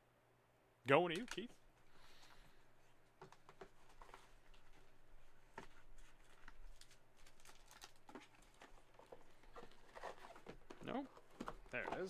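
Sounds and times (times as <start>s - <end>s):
trading cards shuffling: 3.2s - 12.0s.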